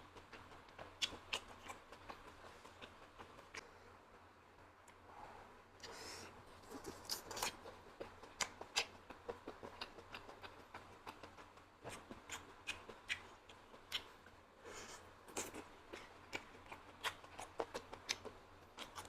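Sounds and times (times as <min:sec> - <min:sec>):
chewing and lip-smacking: 0:00.0 - 0:03.7, 0:06.6 - 0:14.4, 0:15.3 - 0:19.0.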